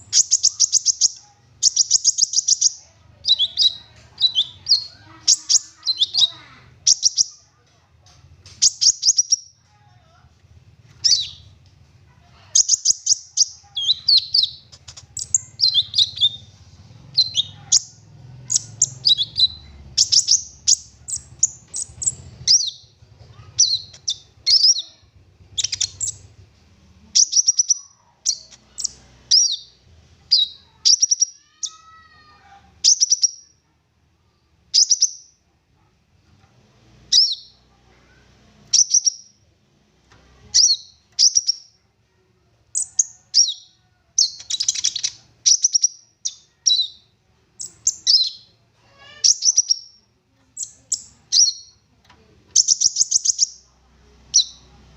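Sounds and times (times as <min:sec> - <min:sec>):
songbird chirping and trilling: 0:00.0 - 0:35.4, 0:37.0 - 0:39.5, 0:40.1 - 0:54.9.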